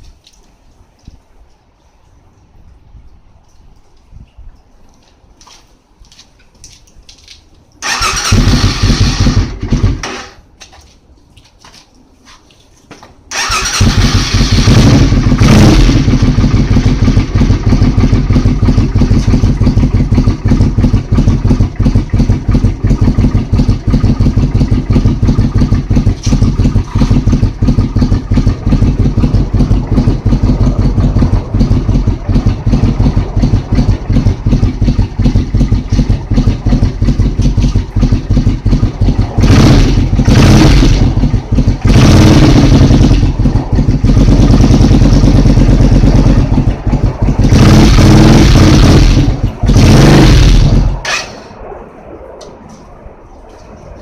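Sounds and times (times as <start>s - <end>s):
motorcycle engine idling and revving: 7.8s - 10.4s, 13.3s - 51.7s.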